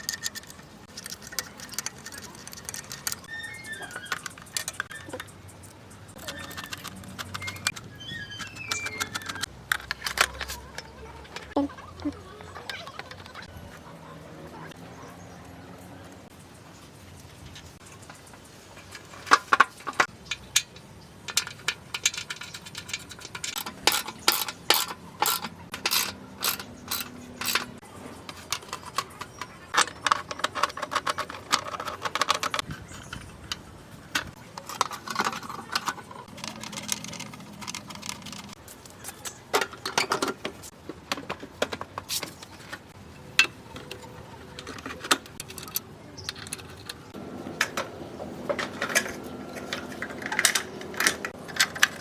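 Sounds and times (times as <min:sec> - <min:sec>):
metal tools clinking: 0:20.3 - 0:33.6, 0:43.2 - 0:47.1.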